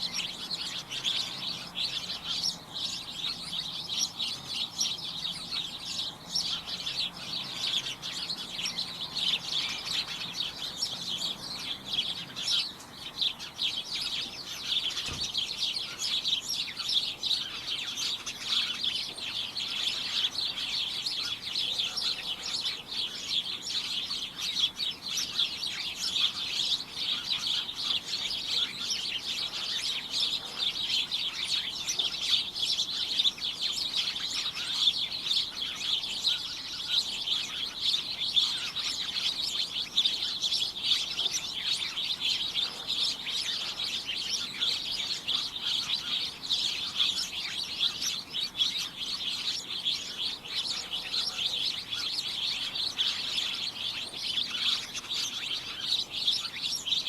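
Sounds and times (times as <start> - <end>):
flock of small birds chirping: 0.0 - 57.0.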